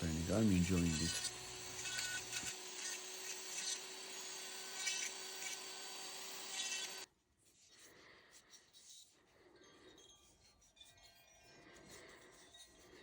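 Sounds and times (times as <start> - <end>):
power carving tool grinding wood: 0.0 - 7.1.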